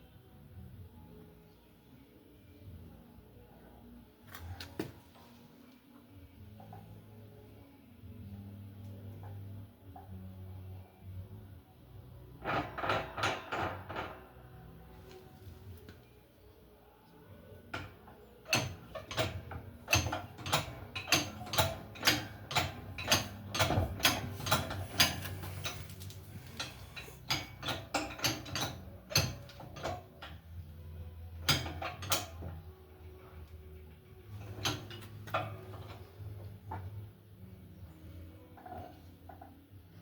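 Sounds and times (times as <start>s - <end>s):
hand tools clicking on metal: 18.5s - 30.4s.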